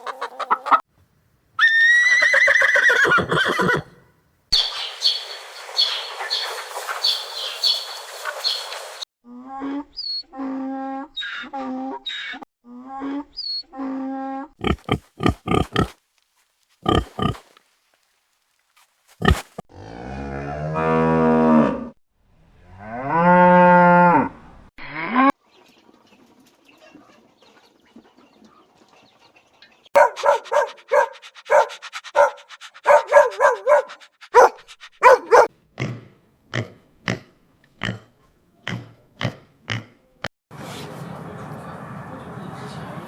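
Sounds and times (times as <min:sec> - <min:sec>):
cattle mooing: 0:14.6 - 0:15.9, 0:16.8 - 0:17.4, 0:19.2 - 0:19.6
quick short animal calls: 0:14.6 - 0:16.0, 0:16.8 - 0:17.6, 0:19.1 - 0:19.6.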